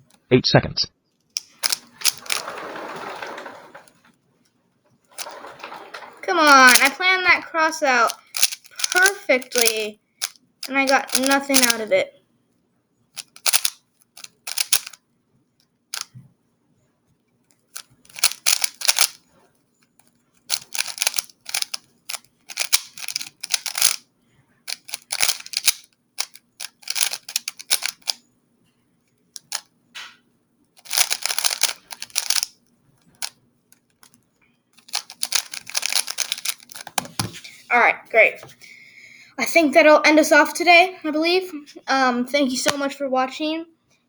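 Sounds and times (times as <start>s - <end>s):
speedcube layers clacking: 1.4s - 4.0s, 5.1s - 12.0s, 13.2s - 15.0s, 15.9s - 16.1s, 17.7s - 19.3s, 20.0s - 24.0s, 24.7s - 28.2s, 29.4s - 29.7s, 30.8s - 33.4s, 34.8s - 37.3s.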